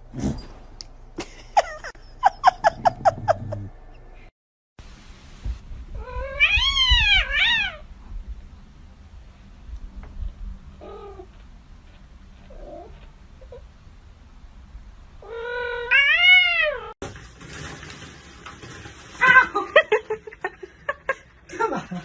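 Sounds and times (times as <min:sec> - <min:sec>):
cat meowing: 0:06.0 - 0:07.8, 0:15.2 - 0:16.9.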